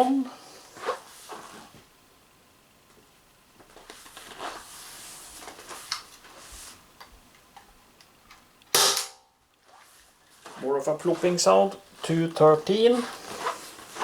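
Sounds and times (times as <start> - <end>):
loud pistol shot: 8.7 - 9.2.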